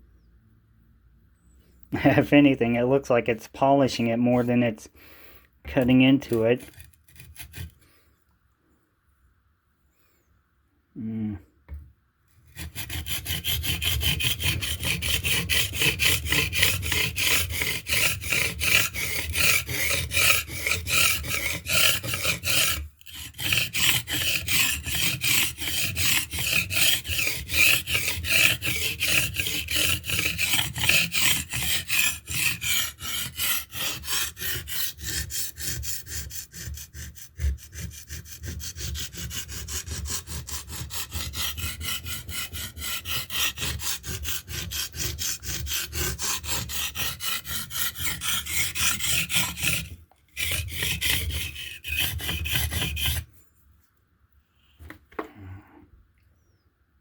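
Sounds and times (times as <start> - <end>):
knife scraping on sharpening stone: 12.8 - 37.2.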